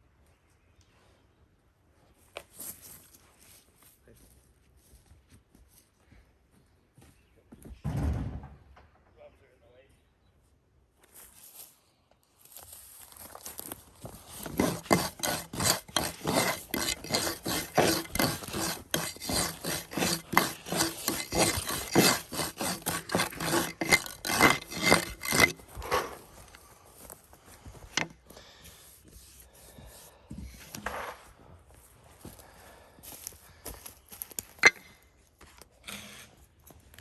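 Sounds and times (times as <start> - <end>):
rapid rasping strokes: 14.1 - 26.5.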